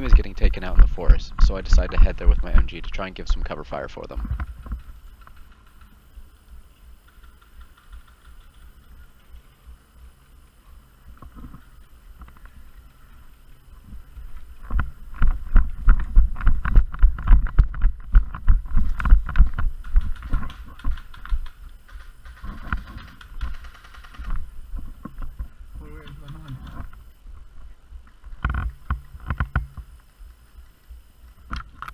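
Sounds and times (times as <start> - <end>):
gear jostling: 11.3 - 27.1
heavy running footsteps: 14.0 - 21.5.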